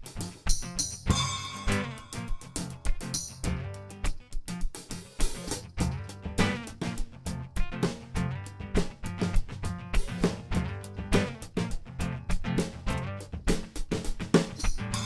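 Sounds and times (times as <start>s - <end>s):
hand percussion beat: 0.0s - 8.2s, 13.4s - 15.0s
strummed guitar: 0.0s - 15.0s.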